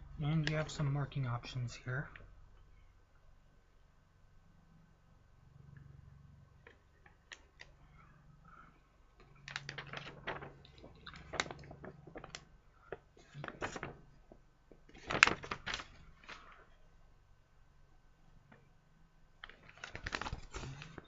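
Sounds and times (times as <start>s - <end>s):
plastic packaging crinkling: 9.2s - 16.6s, 19.4s - 21.0s.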